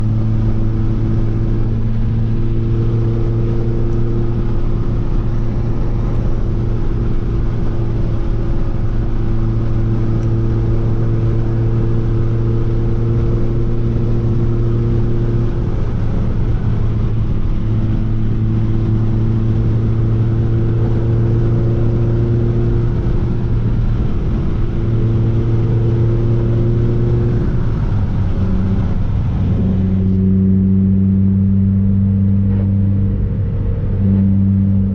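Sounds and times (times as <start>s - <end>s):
car engine running: 0.0s - 34.9s
road and wind noise: 0.0s - 34.9s.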